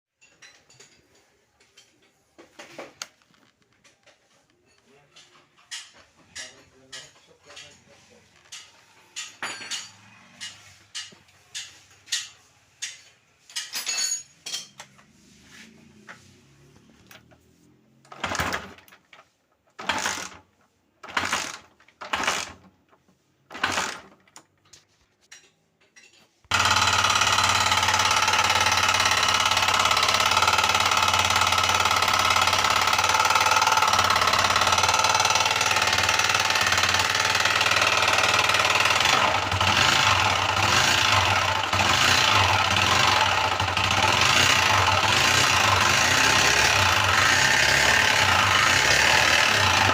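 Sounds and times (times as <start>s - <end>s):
motorcycle engine clattering: 0.2s - 14.9s, 26.5s - 49.9s.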